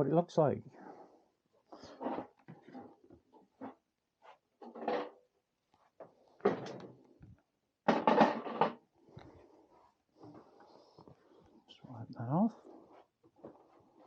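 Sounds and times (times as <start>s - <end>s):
seatpost knocking and clattering: 7.9s - 8.8s.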